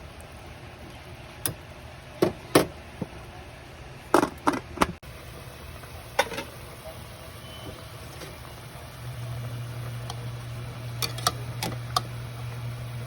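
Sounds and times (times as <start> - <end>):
steady low hum: 0.0 - 13.0
metal utensil clinking on pot: 11.0 - 12.1.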